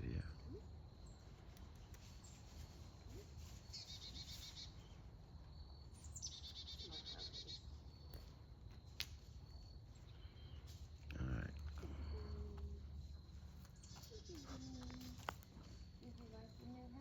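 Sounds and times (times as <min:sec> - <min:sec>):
small bird trilling: 0:03.7 - 0:04.9, 0:06.1 - 0:07.7.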